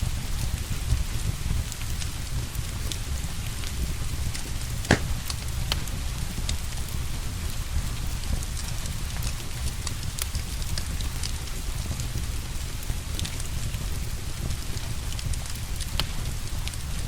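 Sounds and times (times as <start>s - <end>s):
fire crackling and popping: 1.8s - 17.0s
steady rain: 5.9s - 17.0s.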